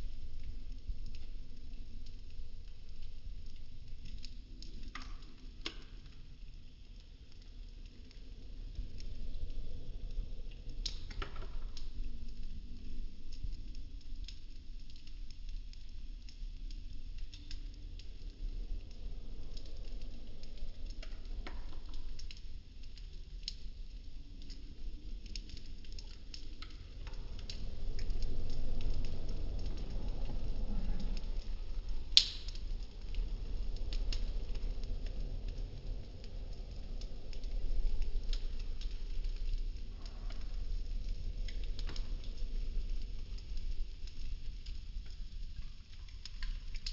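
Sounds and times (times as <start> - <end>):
low rumble of flame: 0.0 - 46.9
wooden sticks crackling: 19.5 - 43.4.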